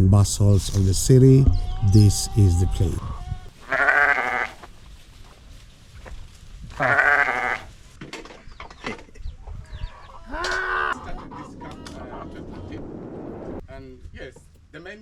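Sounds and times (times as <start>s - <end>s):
animal bleating: 1.6s - 4.6s, 6.8s - 7.7s.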